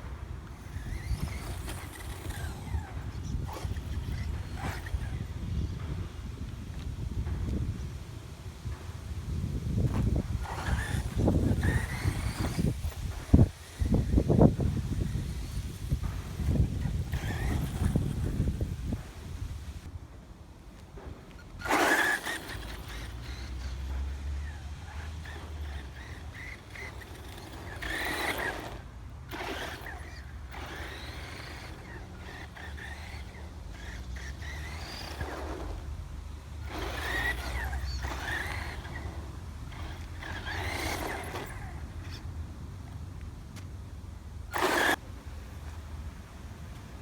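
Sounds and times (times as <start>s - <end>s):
rc car motor whining: 0.0s - 7.9s, 8.6s - 19.9s, 20.8s - 45.1s
buggy running over rough ground: 0.0s - 47.0s.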